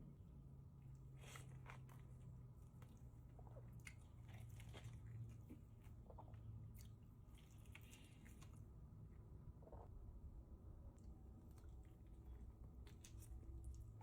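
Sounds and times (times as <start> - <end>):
low steady hum: 0.0 - 14.0
person chewing food: 0.9 - 8.8, 11.0 - 14.0.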